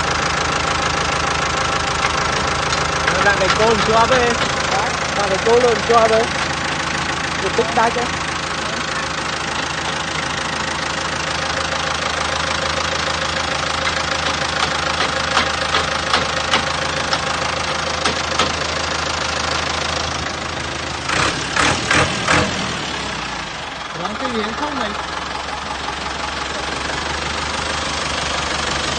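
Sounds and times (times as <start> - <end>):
heavy machine engine running: 0.0 - 28.9
sharp clicks and knocks: 2.0 - 4.7, 13.8 - 18.6.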